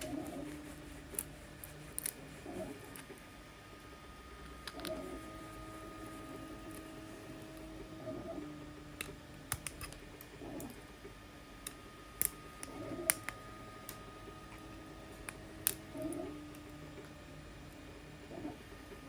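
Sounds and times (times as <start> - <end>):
steady hum: 0.0 - 19.0
plastic snapping clicks and cracks: 9.0 - 10.0, 11.6 - 14.0.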